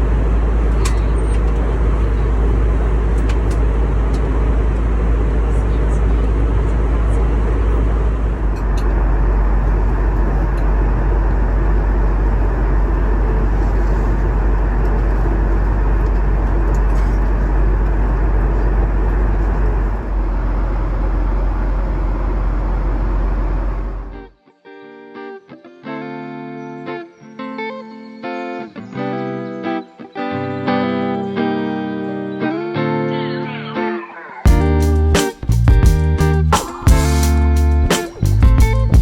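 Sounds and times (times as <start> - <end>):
airliner cabin engine rumble: 0.0 - 24.3.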